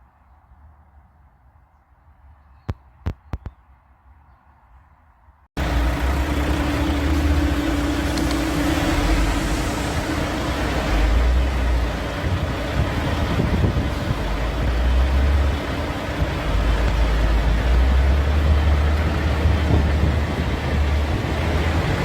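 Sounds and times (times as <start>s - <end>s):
truck diesel engine running: 5.6s - 22.0s.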